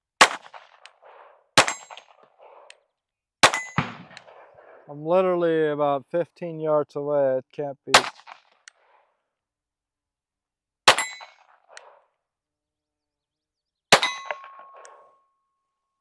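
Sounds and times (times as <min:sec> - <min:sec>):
pistol shots: 0:00.2 - 0:02.2, 0:03.4 - 0:04.6, 0:07.9 - 0:08.5, 0:10.9 - 0:11.9, 0:13.9 - 0:15.0
metallic ring: 0:14.0 - 0:15.6.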